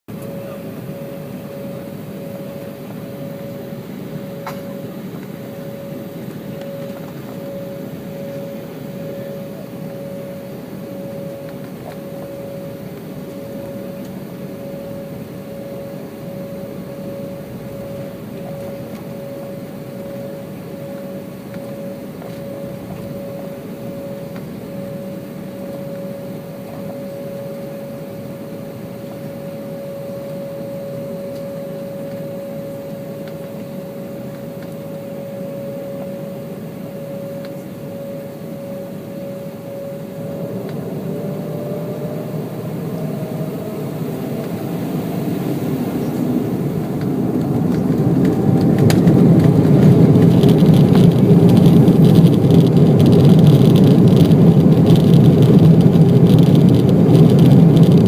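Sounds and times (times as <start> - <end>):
jet engines whining: 0.1 - 58.0.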